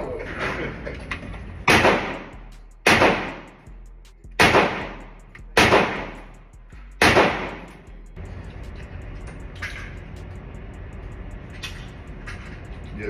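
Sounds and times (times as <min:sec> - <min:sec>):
gunshots with echoing tail: 0:01.7 - 0:03.6, 0:04.4 - 0:06.3, 0:07.0 - 0:07.8.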